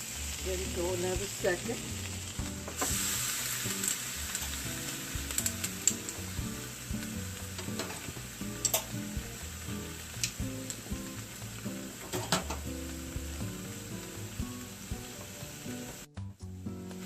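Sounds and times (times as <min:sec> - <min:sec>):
meat sizzling on a griddle: 0:00.0 - 0:17.0.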